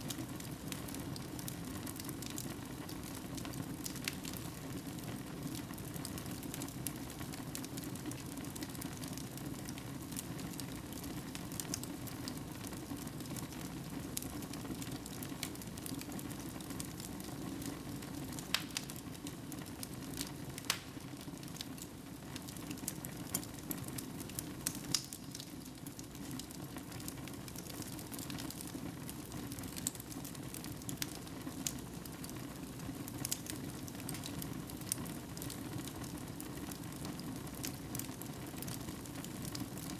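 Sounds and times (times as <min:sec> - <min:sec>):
fire crackling in fireplace: 0:00.0 - 0:39.9.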